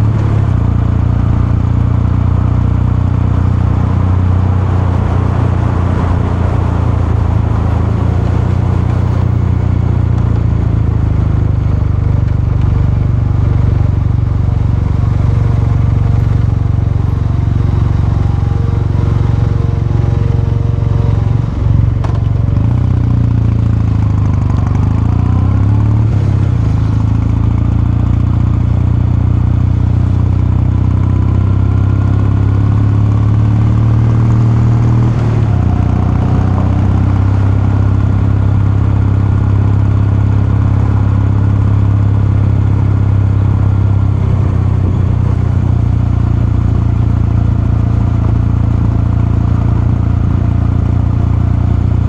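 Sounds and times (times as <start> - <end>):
motorcycle engine and exhaust: 0.0 - 52.0.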